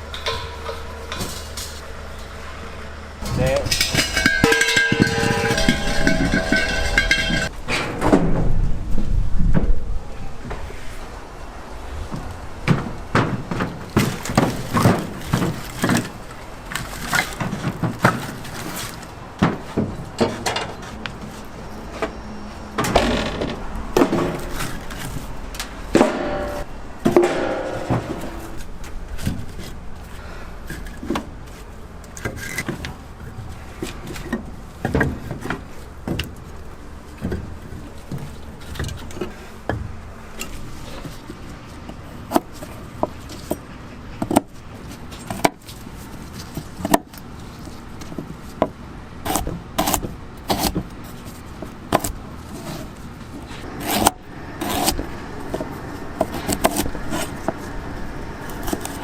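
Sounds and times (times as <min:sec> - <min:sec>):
sharp clicks and clinking knocks: 0:00.0 - 0:01.6, 0:03.2 - 0:08.2
steady low hum: 0:00.0 - 0:59.0.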